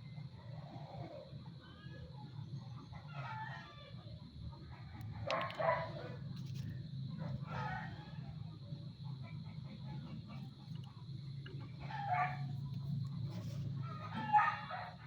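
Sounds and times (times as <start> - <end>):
steady low hum: 4.2 - 15.0
rooster crowing: 11.8 - 12.5, 13.8 - 15.0.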